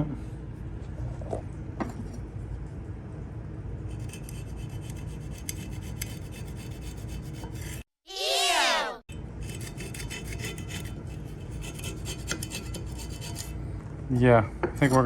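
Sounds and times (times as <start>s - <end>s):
steady low hum: 0.0s - 7.9s, 9.1s - 15.0s
rubbing and scraping on compressor: 3.9s - 7.9s, 9.2s - 15.0s.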